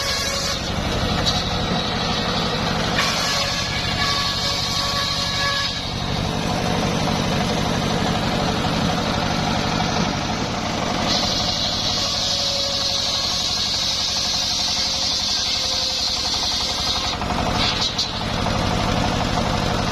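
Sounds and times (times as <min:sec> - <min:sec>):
saw blade hiss: 0:00.0 - 0:06.2, 0:11.0 - 0:18.2
engine rumble: 0:00.0 - 0:19.9.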